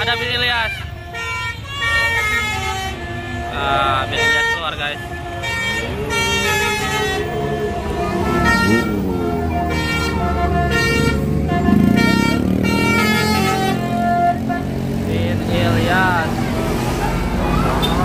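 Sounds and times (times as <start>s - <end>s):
multi-tone bus horn tune: 0.0s - 18.0s
bus engine running: 5.2s - 18.0s.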